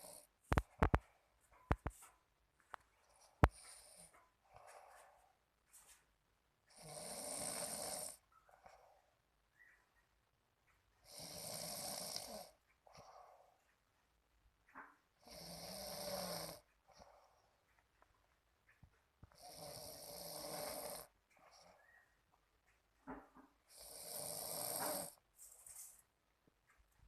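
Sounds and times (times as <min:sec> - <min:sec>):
soft breathing: 0:00.5 - 0:06.1, 0:12.8 - 0:13.8, 0:16.1 - 0:18.0
person snoring: 0:06.7 - 0:08.2, 0:11.1 - 0:12.6, 0:15.2 - 0:16.6, 0:19.3 - 0:21.1, 0:23.7 - 0:25.2.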